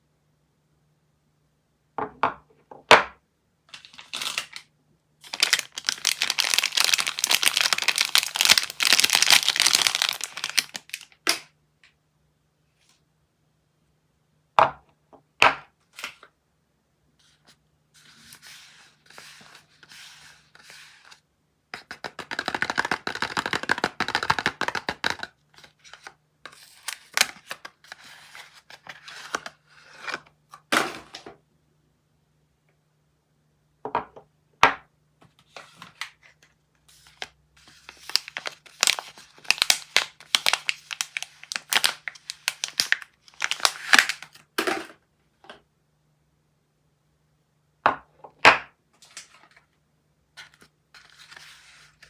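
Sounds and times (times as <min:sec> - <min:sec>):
packaging snapping: 0:05.2 - 0:11.5, 0:37.9 - 0:44.4
packaging tearing and crinkling: 0:05.2 - 0:11.5, 0:25.6 - 0:29.4, 0:37.0 - 0:44.5.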